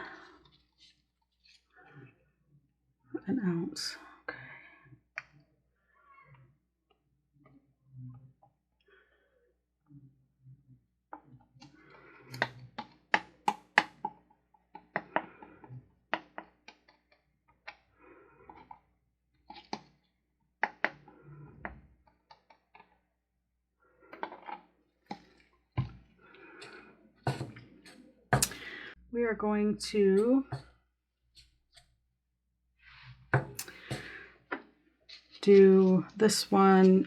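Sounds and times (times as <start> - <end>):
plastic cups and tools clicking: 24.1 - 28.9, 33.4 - 37.0.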